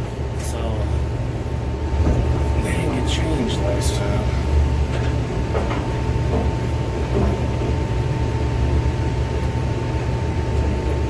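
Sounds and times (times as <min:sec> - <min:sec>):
industrial machinery rumbling: 0:00.0 - 0:07.6.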